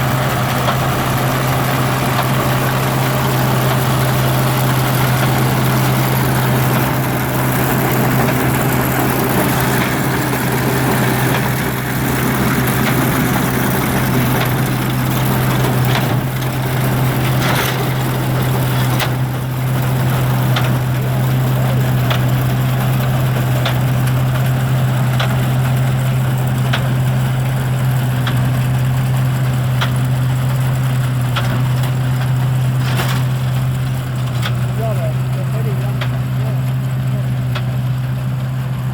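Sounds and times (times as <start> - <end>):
hay baler engine drone: 0.0 - 38.9.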